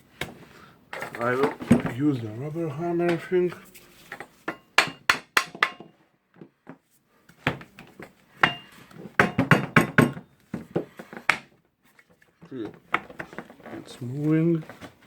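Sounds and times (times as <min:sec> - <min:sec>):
rubber mallet knocking on metal: 0:04.8 - 0:05.8.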